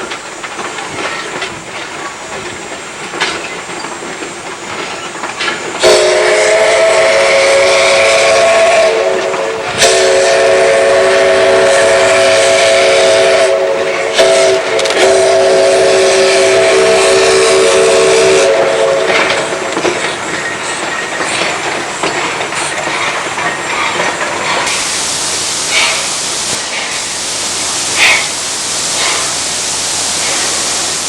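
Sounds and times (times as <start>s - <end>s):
train hissing and running: 0.0s - 31.0s
steam locomotive chime whistle: 5.8s - 24.0s.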